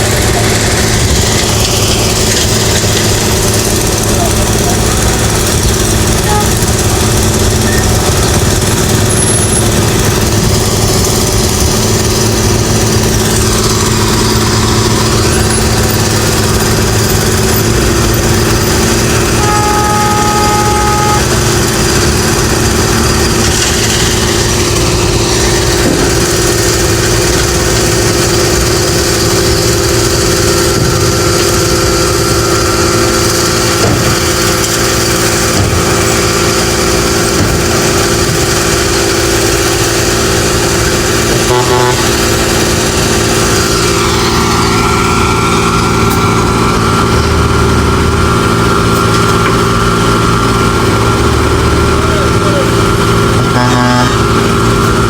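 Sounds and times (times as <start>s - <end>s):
construction machinery engines: 0.0s - 55.0s
two-note tone: 6.2s - 6.7s, 19.1s - 21.9s, 41.5s - 42.2s, 53.5s - 54.3s.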